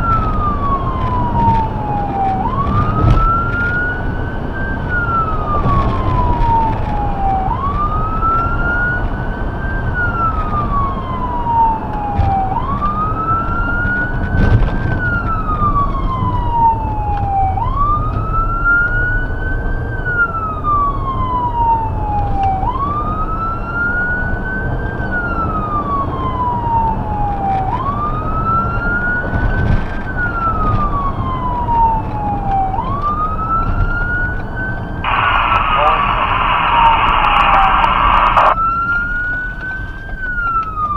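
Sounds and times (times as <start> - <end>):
road and engine noise: 0.0 - 40.9
electronic siren wailing: 30.1 - 40.9.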